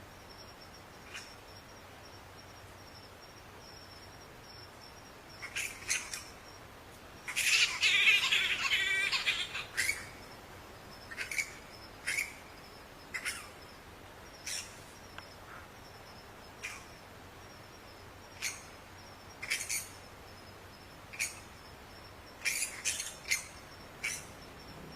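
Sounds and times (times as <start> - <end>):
bats squeaking: 5.3 - 6.6, 7.2 - 17.0, 18.3 - 20.1, 20.8 - 21.7, 22.3 - 24.6.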